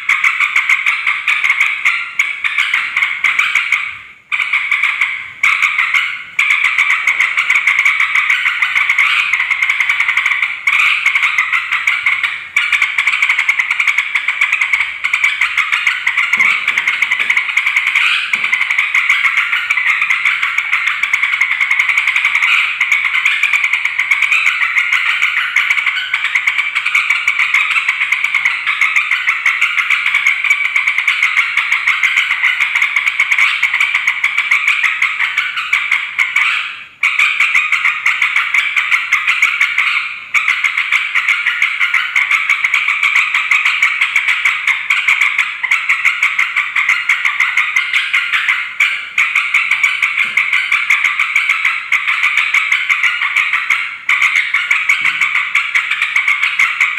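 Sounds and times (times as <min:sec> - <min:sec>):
bulbuls chattering and calling: 0:00.0 - 0:56.9.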